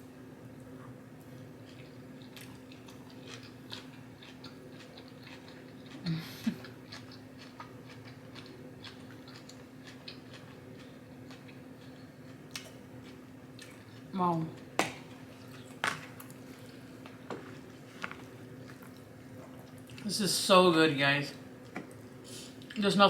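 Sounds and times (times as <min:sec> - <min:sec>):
salad crunching while chewing: 0:01.6 - 0:20.1.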